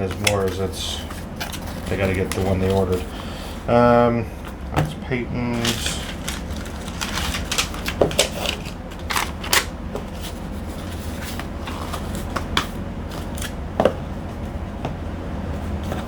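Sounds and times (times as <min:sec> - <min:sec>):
packaging clicks and rustles: 0:00.0 - 0:03.1, 0:05.5 - 0:13.6
steady low hum: 0:00.0 - 0:16.0.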